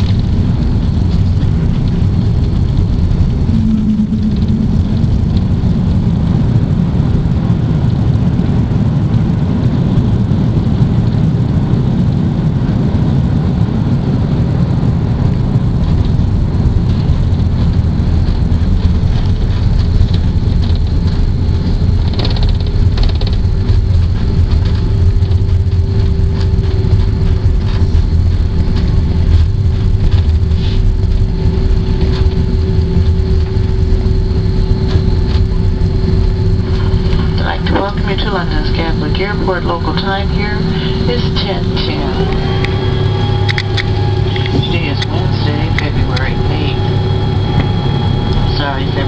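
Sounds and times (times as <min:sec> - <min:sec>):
faint steady hum: 0:00.0 - 0:09.8, 0:15.8 - 0:49.0
airplane cabin rumble: 0:00.0 - 0:49.0.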